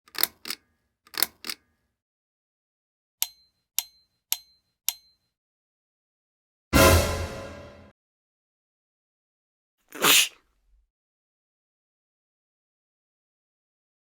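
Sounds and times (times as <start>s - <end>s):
short metallic pings: 3.2s - 5.2s.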